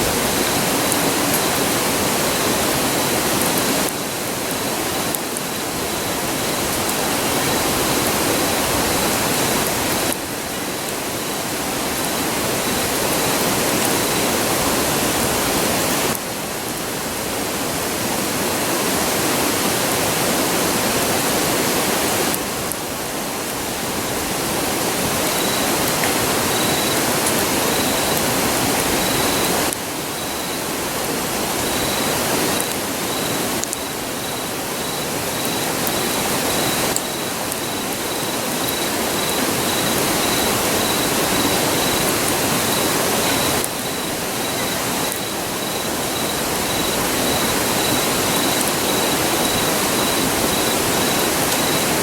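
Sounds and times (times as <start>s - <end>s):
river rushing: 0.0s - 16.2s, 16.9s - 52.0s
faint high-pitched chirp: 25.2s - 30.7s, 31.6s - 52.0s.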